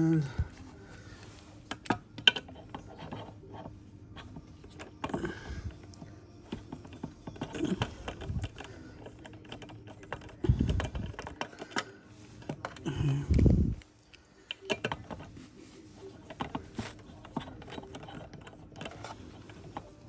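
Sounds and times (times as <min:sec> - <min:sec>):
screwdriver clicks and scrapes on plastic: 0:01.7 - 0:12.8, 0:14.5 - 0:15.4, 0:16.1 - 0:20.0.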